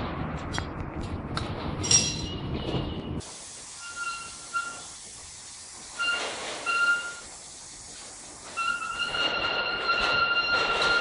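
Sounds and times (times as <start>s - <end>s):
sharp metallic clink: 1.8s - 3.0s.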